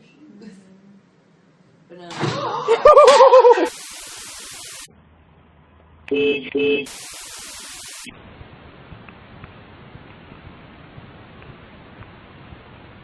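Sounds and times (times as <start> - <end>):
static-like hiss: 3.1 - 5.0, 6.5 - 13.0.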